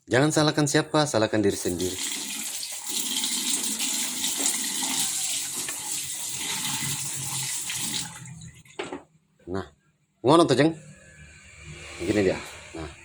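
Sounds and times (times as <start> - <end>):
oil boiling and sizzling in a pan: 1.6 - 8.6.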